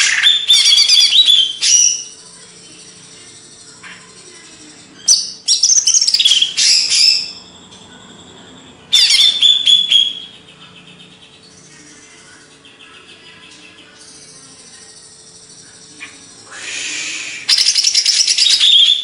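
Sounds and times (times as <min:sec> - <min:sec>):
bird whistling song: 0:00.0 - 0:02.2, 0:05.0 - 0:10.4, 0:15.0 - 0:19.0.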